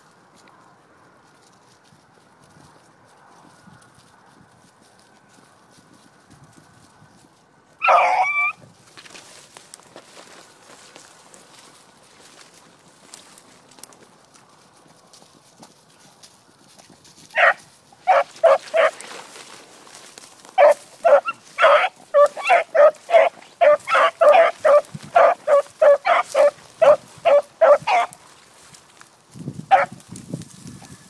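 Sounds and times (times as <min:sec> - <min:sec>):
dog barking: 0:07.8 - 0:08.6, 0:17.4 - 0:19.0, 0:20.6 - 0:28.2, 0:29.7 - 0:29.9.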